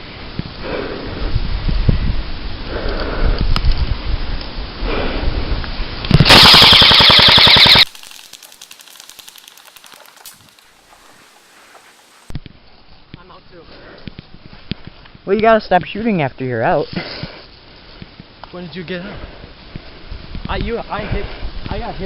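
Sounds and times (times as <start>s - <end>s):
airsoft gun automatic fire: 6.2s - 9.9s.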